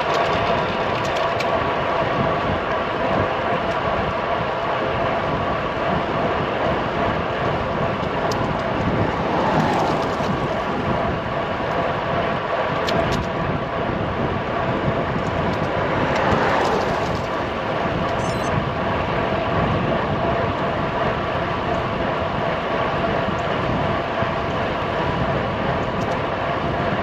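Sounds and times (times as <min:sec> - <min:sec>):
wind rushing over microphone: 0:00.0 - 0:27.0
bicycle tyre noise: 0:04.2 - 0:18.5.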